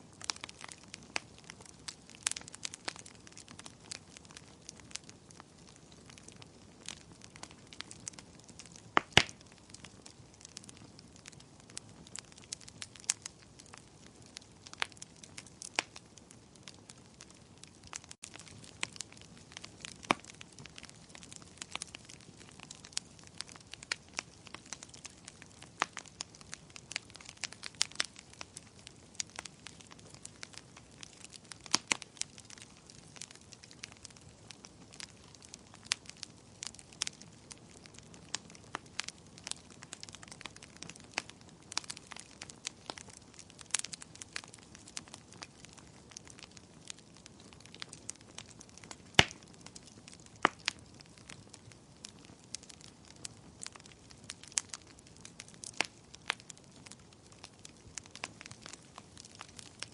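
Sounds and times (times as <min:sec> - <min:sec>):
wood fire crackling and popping: 0:00.0 - 0:59.9.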